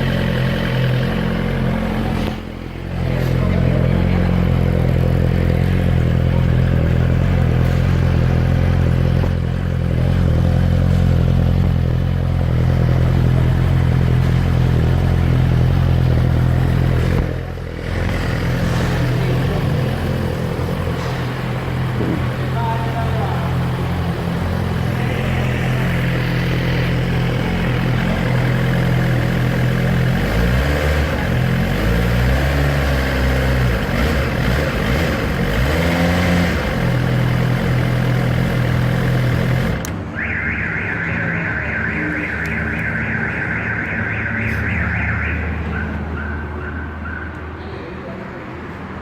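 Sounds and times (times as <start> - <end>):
motorcycle engine idling and revving: 0.0 - 49.0.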